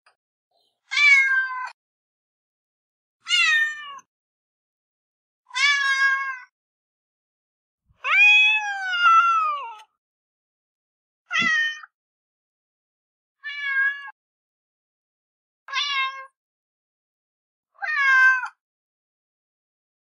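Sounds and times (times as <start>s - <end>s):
cat meowing: 0.9s - 1.8s, 3.2s - 4.1s, 8.0s - 9.9s, 11.3s - 11.9s, 13.4s - 14.2s, 15.7s - 16.4s, 17.8s - 18.6s.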